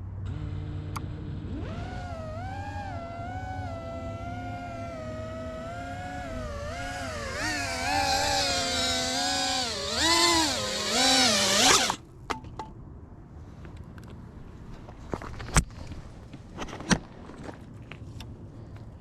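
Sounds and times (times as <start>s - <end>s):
drone propellers whining: 0.3s - 12.0s.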